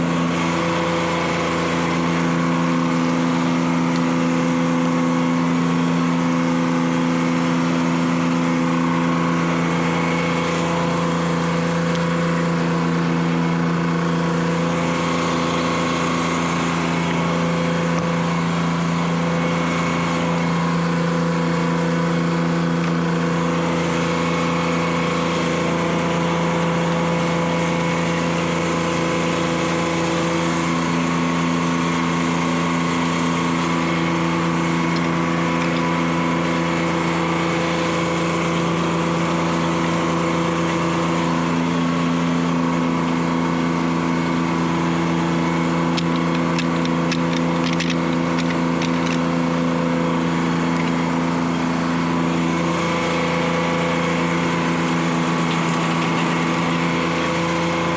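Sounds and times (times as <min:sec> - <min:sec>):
diesel engine running: 0:00.0 - 0:57.9.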